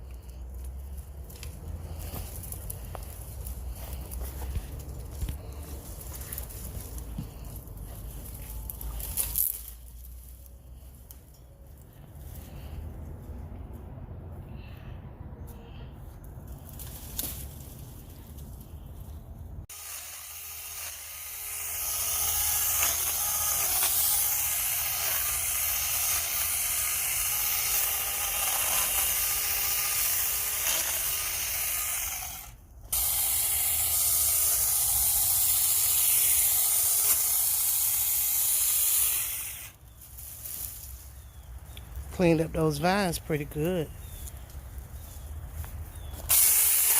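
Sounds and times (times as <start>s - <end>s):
electric chainsaw cutting vines: 19.7s - 40.9s, 46.1s - 46.9s.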